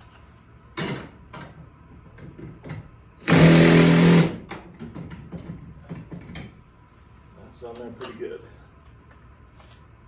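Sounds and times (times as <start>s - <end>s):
power driver whining: 3.2s - 4.4s.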